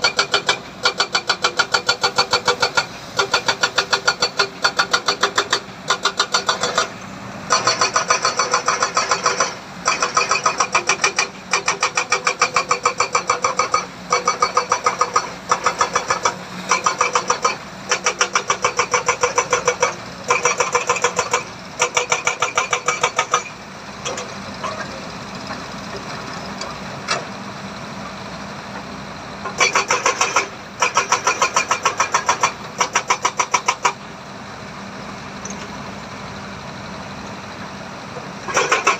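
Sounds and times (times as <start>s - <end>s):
steady engine hum: 0.0s - 38.9s
rapid machinery clattering: 38.5s - 38.9s.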